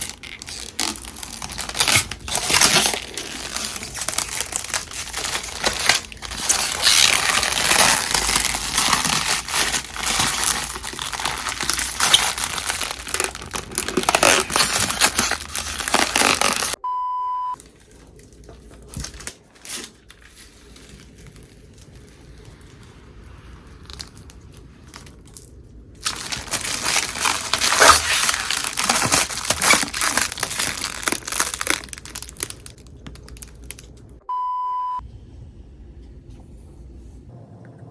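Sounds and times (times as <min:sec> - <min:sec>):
crinkling and rustling: 0:00.0 - 0:16.8, 0:17.6 - 0:34.2
electronic beep: 0:16.8 - 0:17.6, 0:34.3 - 0:35.0.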